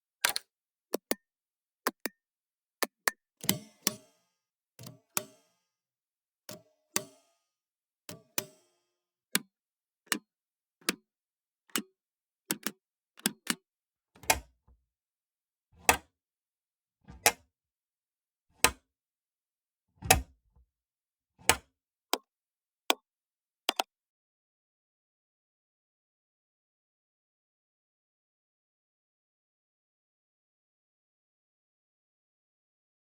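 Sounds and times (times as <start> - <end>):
pushbutton switch clicks: 0.2 - 0.4, 1.0 - 1.2, 1.9 - 2.1, 12.5 - 13.6, 14.2 - 14.4, 17.1 - 17.4, 20.0 - 20.2.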